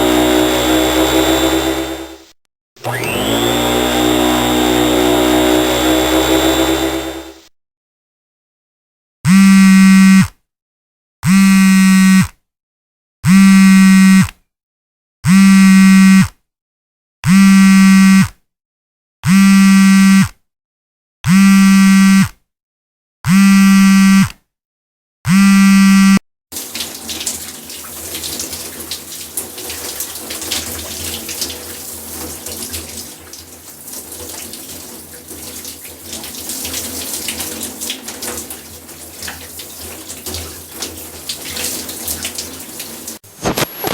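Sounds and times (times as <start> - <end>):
tap running water: 0.0 - 1.5, 2.9 - 6.7, 26.5 - 43.7.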